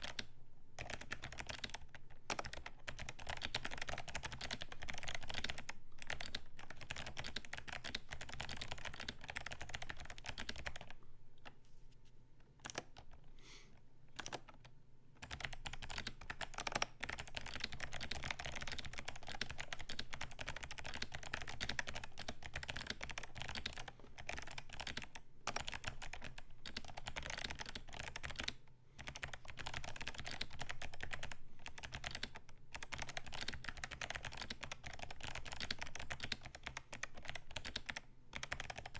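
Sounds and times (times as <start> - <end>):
clicky mechanical keyboard typing: 0.0 - 11.6, 12.6 - 13.2, 14.1 - 38.9.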